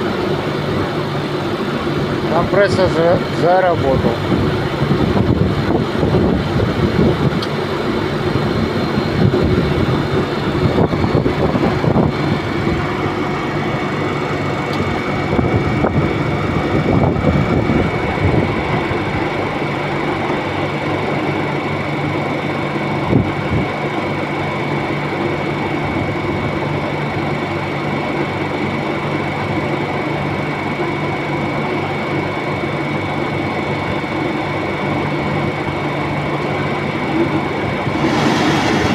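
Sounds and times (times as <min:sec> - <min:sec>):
cooling unit hum and whine: 0:00.0 - 0:38.9.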